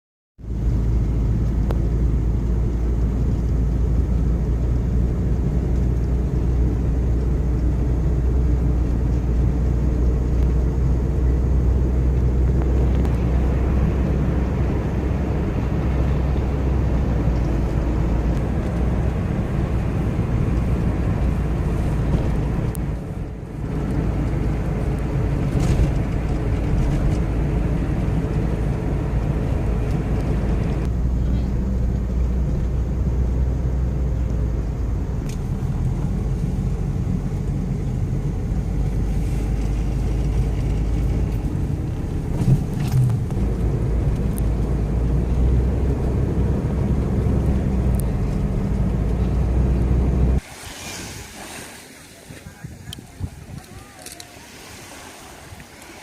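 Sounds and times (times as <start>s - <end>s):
sea surf washing on beach: 50.4s - 56.0s.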